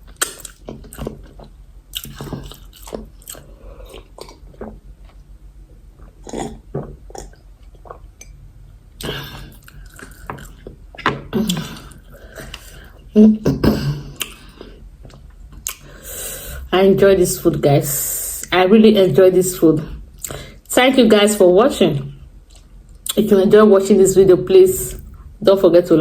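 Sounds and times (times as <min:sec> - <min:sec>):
chewing and wet smacking: 0:00.0 - 0:08.4, 0:09.0 - 0:12.8, 0:14.2 - 0:15.9, 0:22.1 - 0:23.2
throaty vocal noises: 0:06.0 - 0:08.0.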